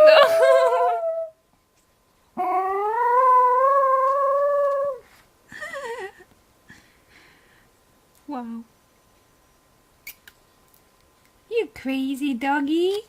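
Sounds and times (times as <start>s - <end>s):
dog howling: 2.4s - 5.0s.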